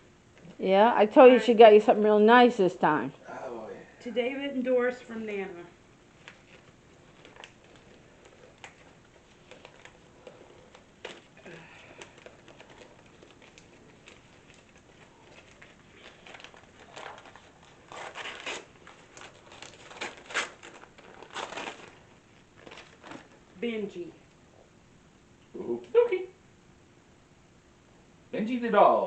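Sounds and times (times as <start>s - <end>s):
wrapping paper crinkling: 6.1s - 23.6s.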